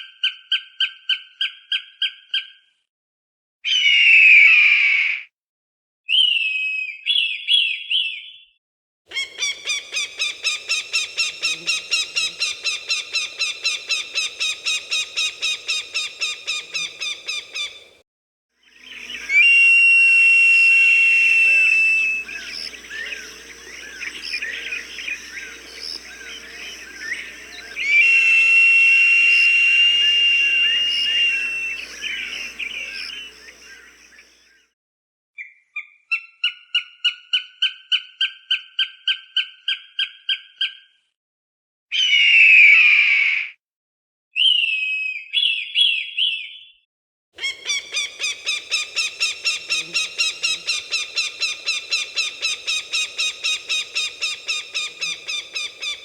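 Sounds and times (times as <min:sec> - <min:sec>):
faint birds chirping: 0:09.1 - 0:18.0, 0:18.6 - 0:19.8, 0:20.8 - 0:34.4, 0:47.4 - 0:56.0
hawk calls: 0:09.1 - 0:18.0, 0:18.7 - 0:34.3, 0:47.4 - 0:56.0.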